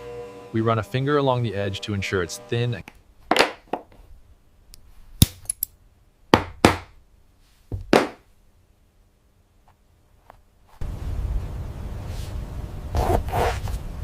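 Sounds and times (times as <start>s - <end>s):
knife scraping leather: 13.0s - 13.8s.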